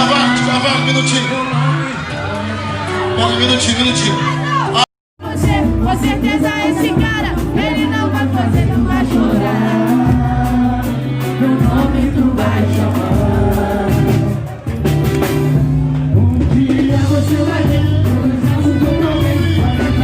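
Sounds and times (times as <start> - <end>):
person singing: 5.2 - 14.5, 16.2 - 20.0
samba band playing: 5.2 - 20.0.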